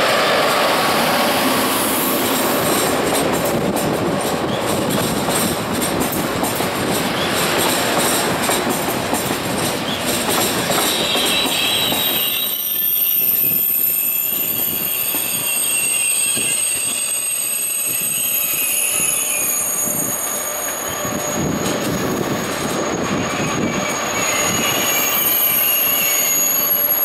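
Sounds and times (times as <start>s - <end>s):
train rolling on rails: 0.0s - 27.0s
high-pitched metallic squeal: 10.6s - 27.0s.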